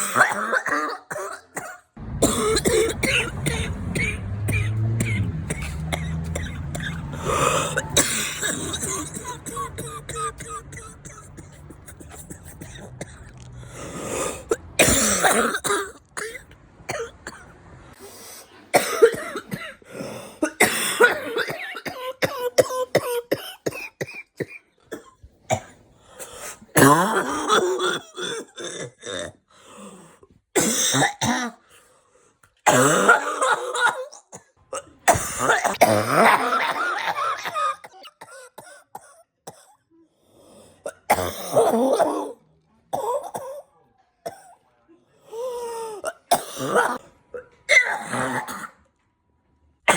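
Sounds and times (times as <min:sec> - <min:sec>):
person coughing: 0:00.0 - 0:13.4, 0:14.1 - 0:17.4, 0:18.7 - 0:25.7, 0:26.4 - 0:29.4, 0:32.7 - 0:39.7, 0:45.6 - 0:48.8.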